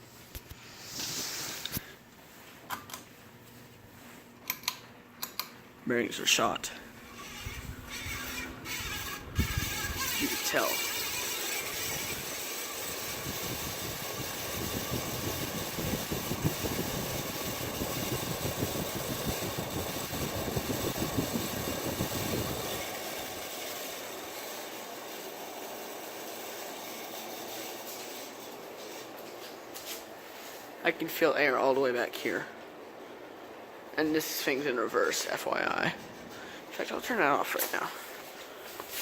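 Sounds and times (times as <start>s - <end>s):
ceiling fan motor rattling grind: 5.8s - 39.0s.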